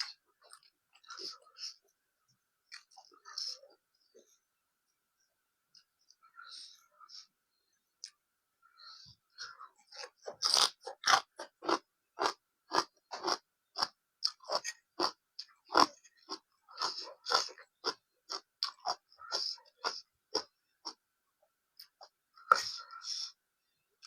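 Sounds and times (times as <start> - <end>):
person chewing crunchy food: 0.0 - 1.8, 2.7 - 3.7, 9.4 - 21.0.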